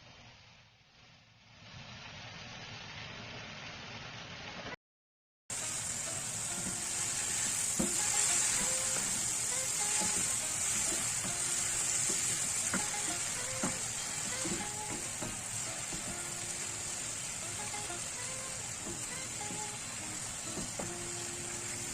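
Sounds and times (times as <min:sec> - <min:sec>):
food sizzling in hot pan: 0:05.5 - 0:21.9.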